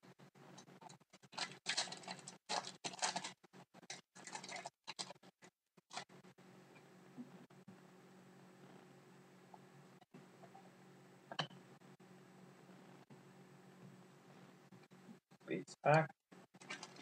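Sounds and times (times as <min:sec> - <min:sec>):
trading cards and foil pack rustling: 0:00.9 - 0:05.3, 0:16.6 - 0:17.0.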